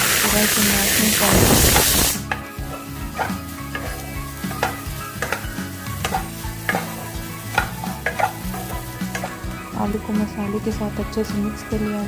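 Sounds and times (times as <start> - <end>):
utensil scraping in a pan: 0.0 - 10.1
light sizzle: 0.0 - 10.8
utensil knocking against pan: 1.8 - 9.4.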